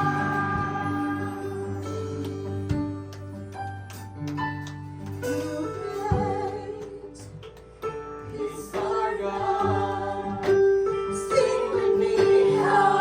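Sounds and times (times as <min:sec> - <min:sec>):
singers holding long notes: 0:00.0 - 0:02.2
worship band playing: 0:00.0 - 0:13.0.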